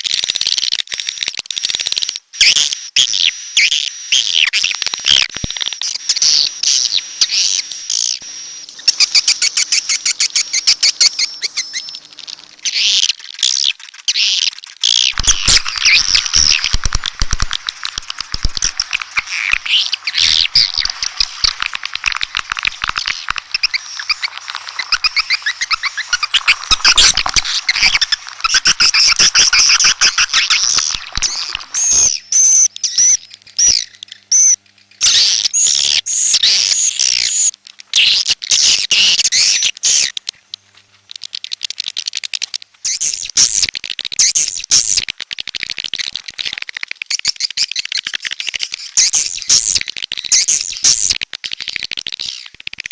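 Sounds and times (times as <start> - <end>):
swiftlets twittering: 4.4 - 35.4.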